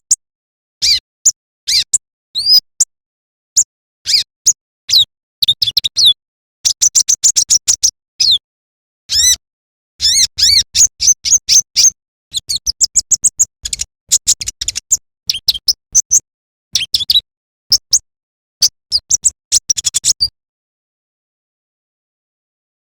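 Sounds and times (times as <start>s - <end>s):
bird chirping and twittering: 0.8s - 1.0s, 10.0s - 16.2s, 16.8s - 18.0s, 18.9s - 20.3s.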